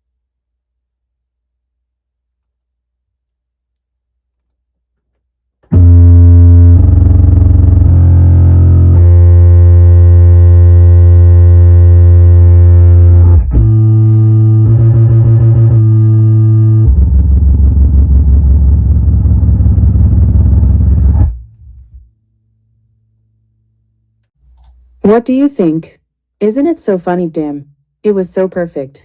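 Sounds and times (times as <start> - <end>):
distorted low keyboard bass notes: 5.6 - 22.1.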